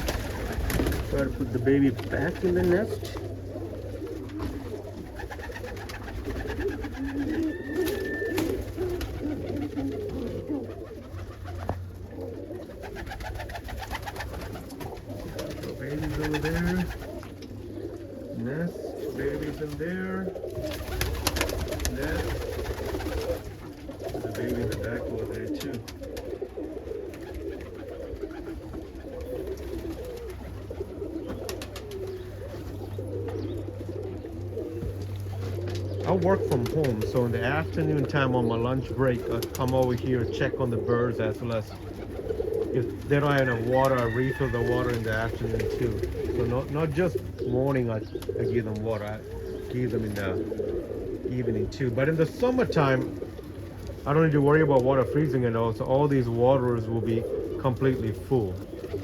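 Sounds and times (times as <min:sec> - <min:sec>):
pigeons cooing: 0:00.0 - 0:59.0.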